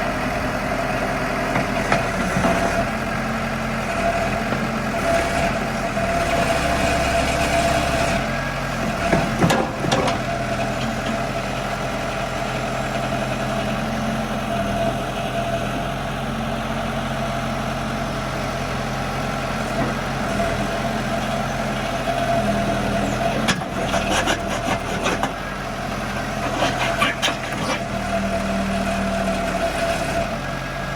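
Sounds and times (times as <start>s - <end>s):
diesel engine idling: 9.7s - 29.0s.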